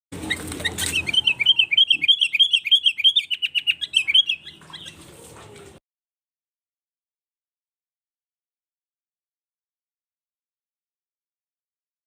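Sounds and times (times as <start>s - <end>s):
bird sharp chirps: 0.2s - 5.0s.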